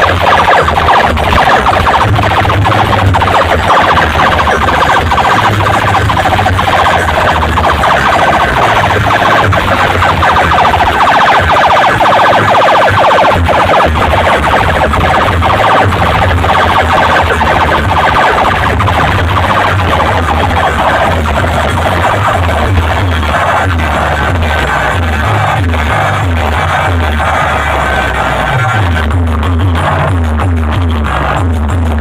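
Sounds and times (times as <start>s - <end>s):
siren-like electronic warble: 0.0s - 31.3s
bass beats: 0.0s - 32.0s.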